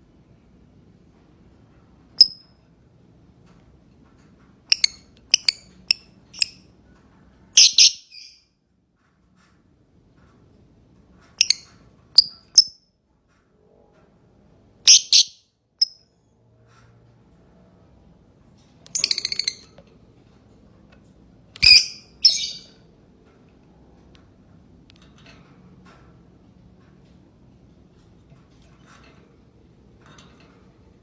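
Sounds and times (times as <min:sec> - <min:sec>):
lovebird shrill chirps: 0:07.6 - 0:08.4, 0:14.9 - 0:16.0, 0:18.9 - 0:19.7, 0:21.6 - 0:22.7.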